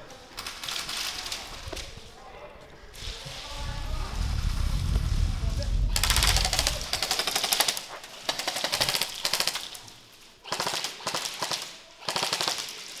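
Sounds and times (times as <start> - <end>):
airsoft gun full-auto bursts: 6.0 - 13.0.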